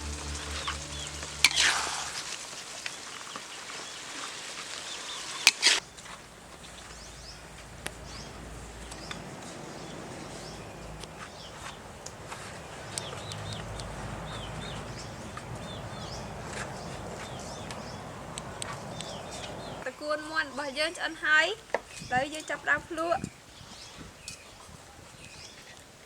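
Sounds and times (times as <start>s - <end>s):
background music: 0.0s - 2.4s
loud sudden sounds: 0.0s - 2.9s
small birds chirping: 0.0s - 25.9s.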